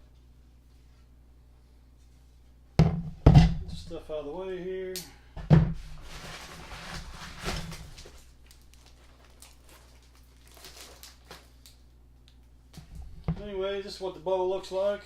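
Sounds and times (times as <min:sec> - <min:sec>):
knock: 0:02.8 - 0:03.6
rustling: 0:05.7 - 0:11.8.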